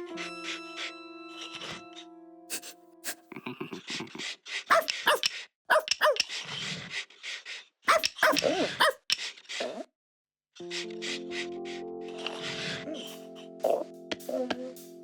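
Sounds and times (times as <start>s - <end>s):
cartoon dog barking and yipping: 4.7s - 6.3s, 7.9s - 9.1s.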